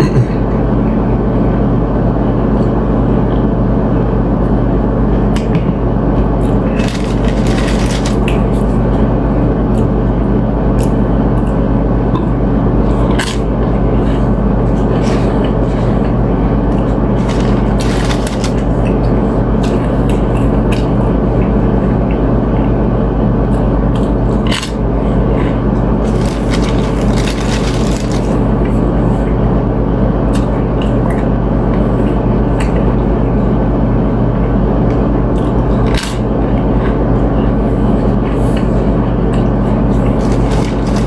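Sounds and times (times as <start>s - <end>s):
steady low hum: 0.0s - 41.0s
chewing and crunching chips: 6.4s - 9.0s, 16.7s - 21.5s, 23.6s - 29.0s, 35.3s - 41.0s.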